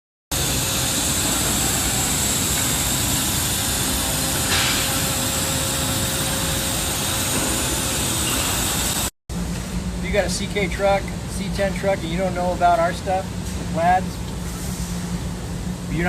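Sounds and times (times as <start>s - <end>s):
mechanical running noise: 0.3s - 9.1s.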